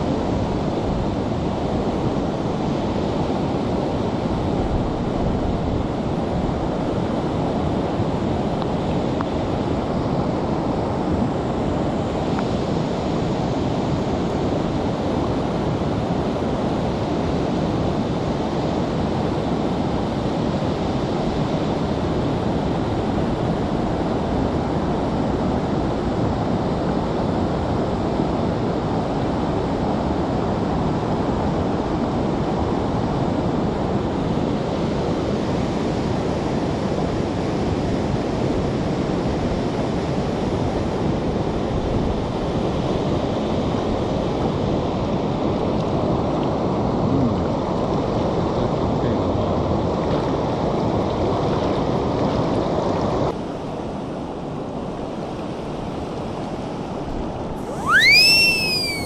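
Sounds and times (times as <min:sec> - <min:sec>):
river rushing: 0:57.6 - 0:59.0.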